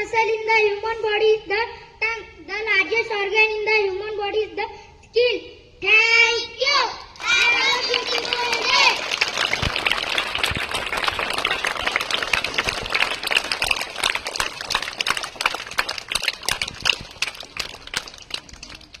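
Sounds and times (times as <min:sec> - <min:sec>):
audience applause: 0:07.2 - 0:19.0.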